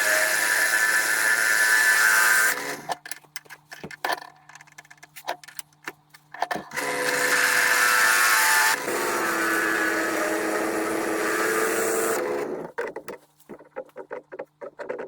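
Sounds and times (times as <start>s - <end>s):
small power tool running: 0.0s - 2.9s, 6.7s - 12.7s.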